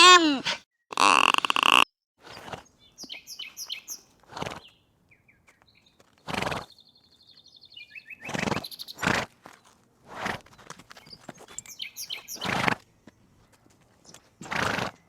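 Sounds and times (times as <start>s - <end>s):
birds chirping: 0.9s - 1.8s.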